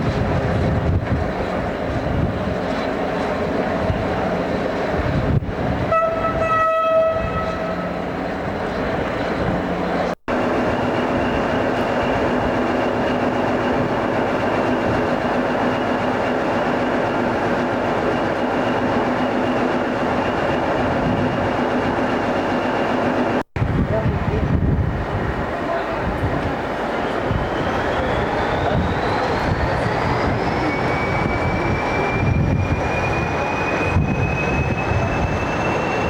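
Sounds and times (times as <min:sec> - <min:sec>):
train rumbling: 0:00.0 - 0:36.0
train horn: 0:05.9 - 0:08.0.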